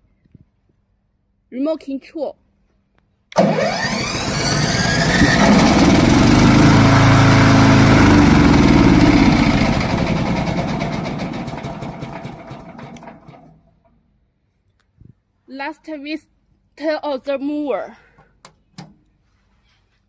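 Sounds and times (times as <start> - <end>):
mower engine running: 3.4 - 13.5.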